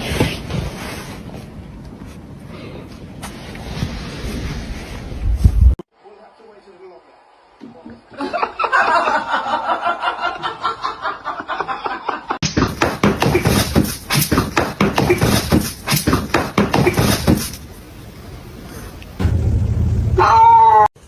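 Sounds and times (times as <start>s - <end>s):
people laughing: 8.1s - 12.4s.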